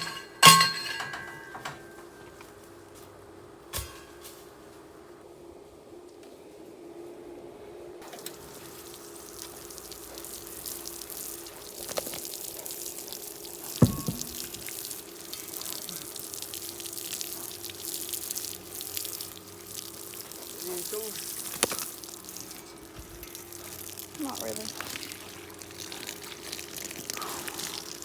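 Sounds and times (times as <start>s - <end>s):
water running and splashing: 8.0s - 28.0s
sharp knock: 13.8s - 14.6s.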